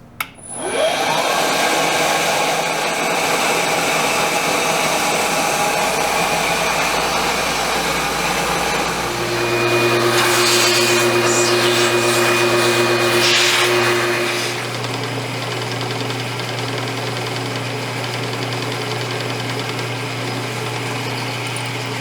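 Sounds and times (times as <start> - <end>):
milling machine spindle running: 0.4 - 15.6
rough hiss: 8.7 - 14.7.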